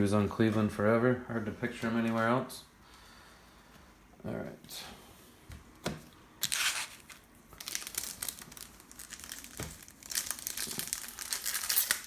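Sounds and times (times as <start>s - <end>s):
plastic wrapping crinkling and tearing: 6.4s - 12.0s.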